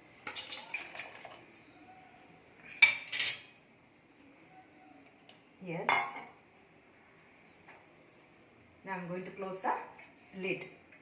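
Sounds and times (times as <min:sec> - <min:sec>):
metal kitchenware clanking: 0:02.8 - 0:03.6.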